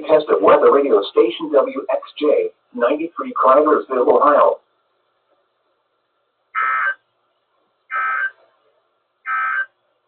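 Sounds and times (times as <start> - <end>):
digital data tones: 6.6 - 7.0, 7.9 - 8.4, 9.3 - 9.7.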